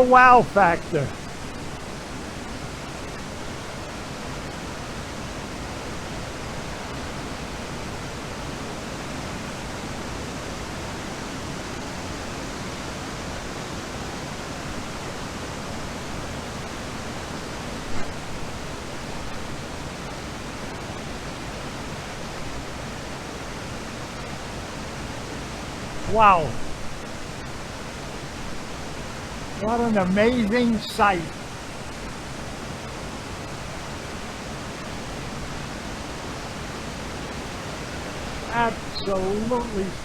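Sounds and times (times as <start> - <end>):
waterfall rushing: 0.0 - 40.0.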